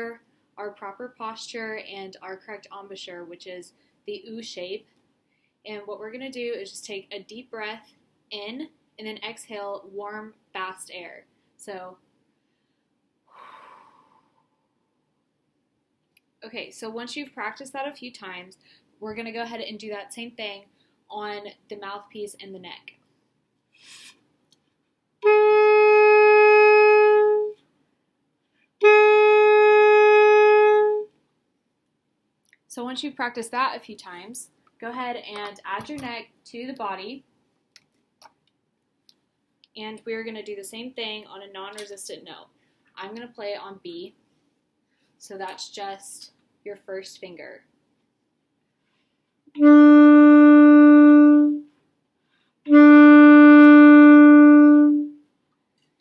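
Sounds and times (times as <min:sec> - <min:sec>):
saxophone mouthpiece long tones: 0:25.2 - 0:27.6, 0:28.8 - 0:31.1, 0:49.5 - 0:51.7, 0:52.7 - 0:55.2.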